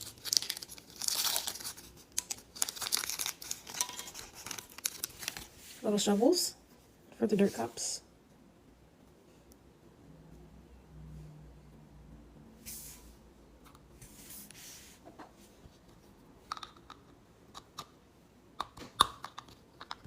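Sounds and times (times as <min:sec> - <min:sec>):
plastic packaging rustling: 0:00.0 - 0:06.2.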